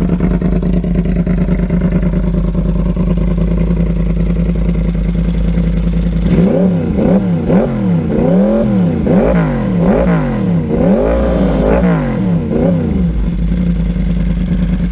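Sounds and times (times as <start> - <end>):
motorcycle engine idling and revving: 0.0 - 14.9.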